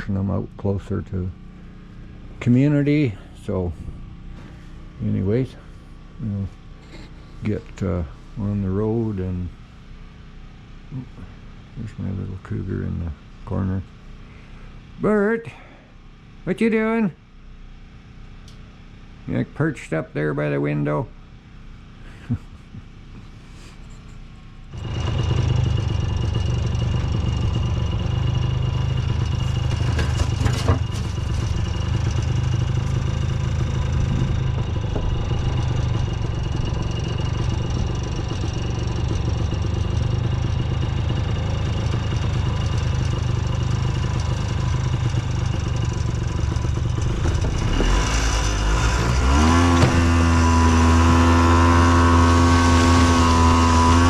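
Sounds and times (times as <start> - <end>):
snowmobile engine revving: 24.7 - 54.0.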